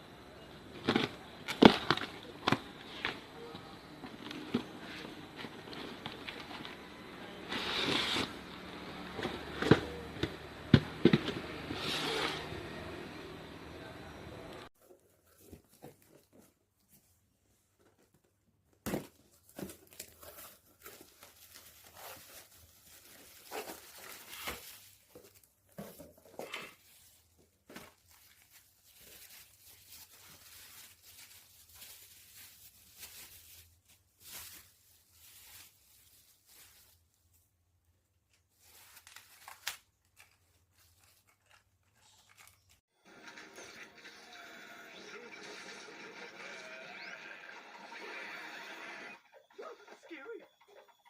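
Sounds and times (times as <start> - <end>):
rustling and crinkling: 0.6 - 8.4, 14.8 - 42.9.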